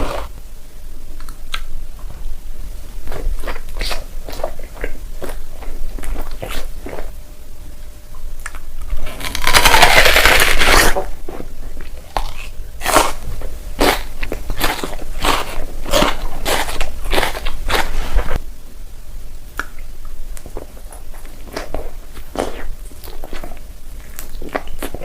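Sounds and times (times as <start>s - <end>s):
crunchy chewing: 3.0s - 7.1s, 8.2s - 18.4s, 19.6s - 25.0s.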